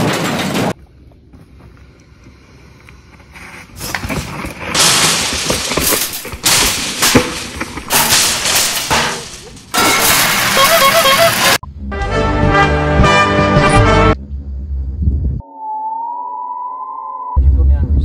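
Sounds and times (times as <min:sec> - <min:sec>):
bike tyres rattling over rock: 0:03.3 - 0:11.6
wind noise: 0:14.2 - 0:15.4.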